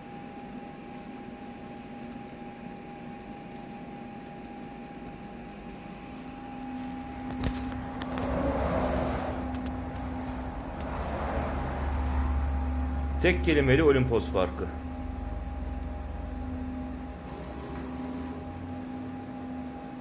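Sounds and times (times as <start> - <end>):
lower machine tone: 0.0 - 20.0
printer machine hum: 1.0 - 20.0
rushing noise: 8.1 - 13.6.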